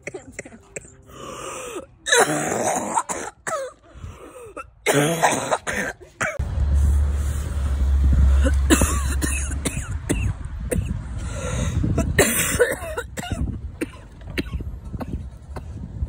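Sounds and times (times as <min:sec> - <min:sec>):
person coughing: 0:00.0 - 0:01.0, 0:02.1 - 0:03.8, 0:04.5 - 0:06.4, 0:08.4 - 0:10.9, 0:12.0 - 0:15.2.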